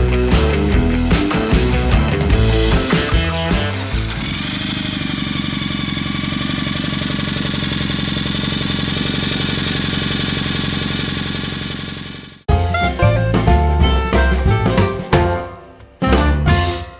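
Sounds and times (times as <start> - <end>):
motorcycle engine idling: 0.1 - 12.5.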